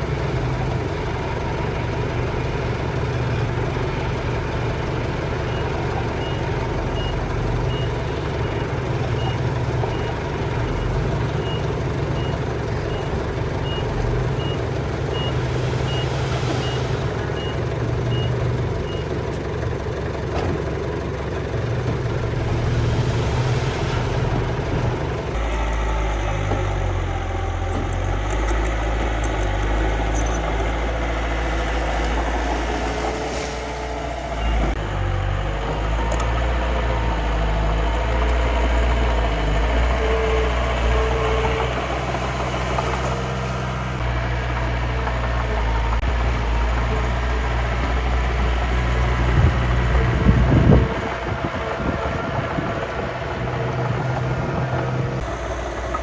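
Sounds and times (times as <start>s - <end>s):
reversing beeper: 5.5s - 19.1s, 29.3s - 34.8s.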